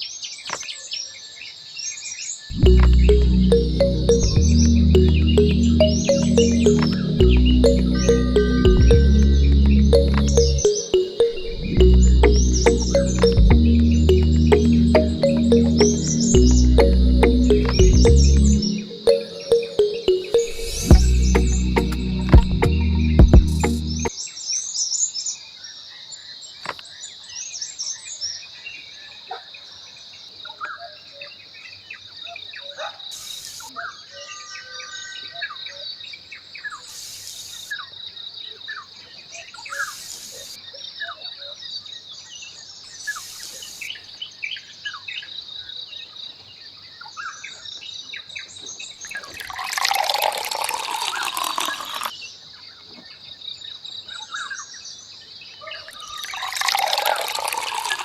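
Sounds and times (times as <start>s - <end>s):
high-pitched drone: 2.5s - 24.1s.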